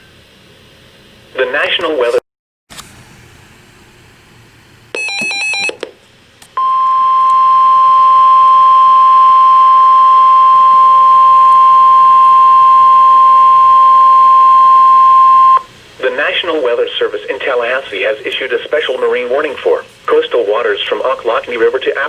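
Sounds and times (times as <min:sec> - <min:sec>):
digital header tones: 0:06.6 - 0:15.7
loud steady alarm tone: 0:06.6 - 0:15.7.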